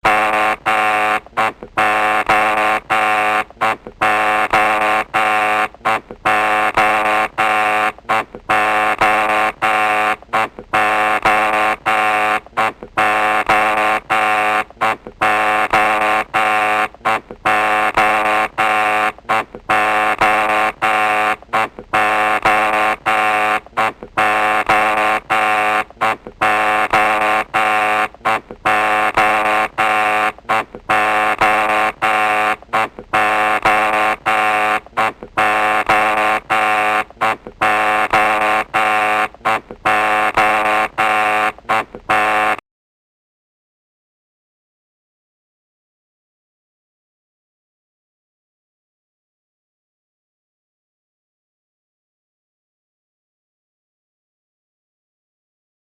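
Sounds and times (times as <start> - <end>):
electric doorbell buzzer: 0.0 - 42.6.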